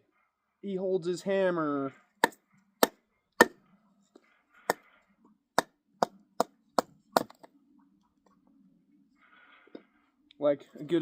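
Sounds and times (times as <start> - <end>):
axe chopping wood: 2.2 - 3.6, 5.6 - 7.5.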